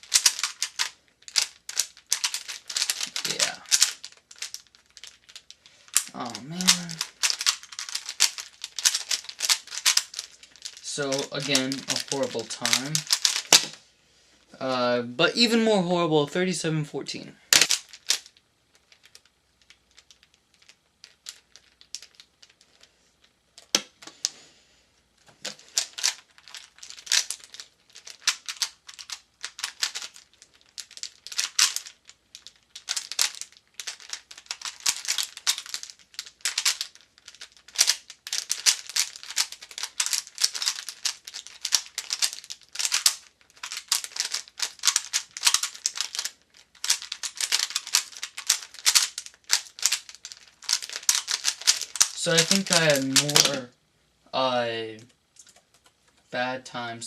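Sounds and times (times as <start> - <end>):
puzzle cube turning clicks: 0.0 - 13.8, 25.4 - 53.6.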